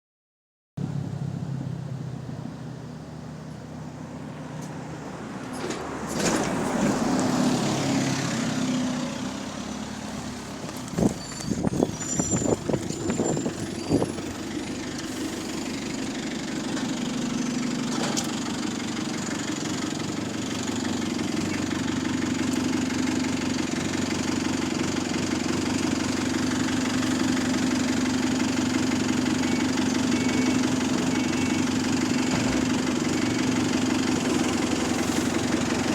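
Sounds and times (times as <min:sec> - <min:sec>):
bus diesel engine idling: 0:00.8 - 0:35.9
air brakes knocking and hissing: 0:10.7 - 0:33.2, 0:34.1 - 0:35.9.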